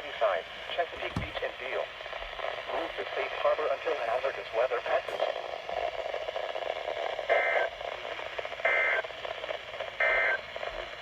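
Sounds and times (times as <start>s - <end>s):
radio hiss: 0.0s - 11.0s.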